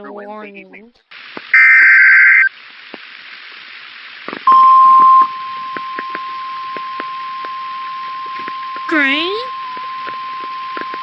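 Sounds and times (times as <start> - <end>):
radio static crackling: 0.0 - 7.1
steady alert tone: 8.9 - 9.5.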